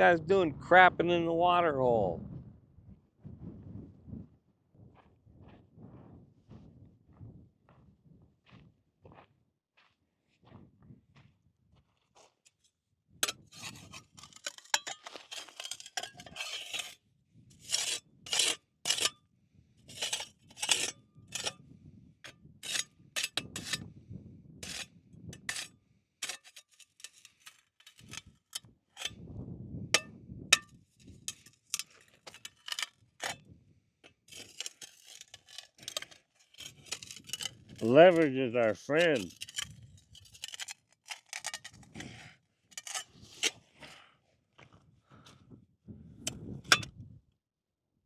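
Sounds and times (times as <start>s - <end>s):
rocks and gravel scraping: 13.2s - 17.0s, 19.9s - 21.6s, 24.6s - 29.2s, 30.0s - 33.4s, 34.0s - 44.7s.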